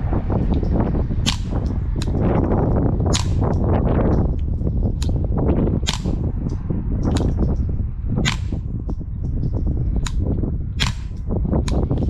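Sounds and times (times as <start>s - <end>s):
low rumble: 0.0s - 12.0s
suppressed gunshots: 1.2s - 3.8s, 5.8s - 6.3s, 8.2s - 8.7s, 10.0s - 11.9s.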